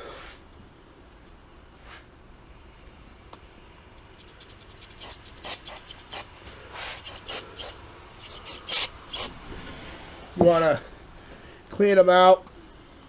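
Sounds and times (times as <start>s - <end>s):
scratching and rubbing by hand: 4.0s - 9.4s.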